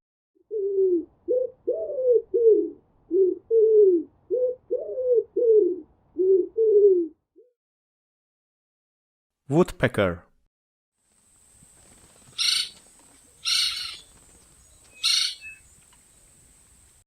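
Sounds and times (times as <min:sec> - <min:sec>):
pigeon cooing: 0:00.4 - 0:07.5, 0:12.4 - 0:15.6.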